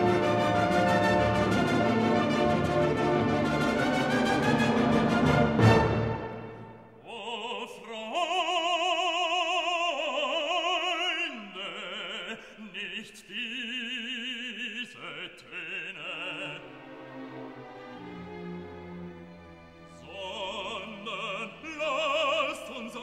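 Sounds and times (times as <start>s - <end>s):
operatic singing with vibrato: 0.0s - 19.2s, 19.8s - 23.0s.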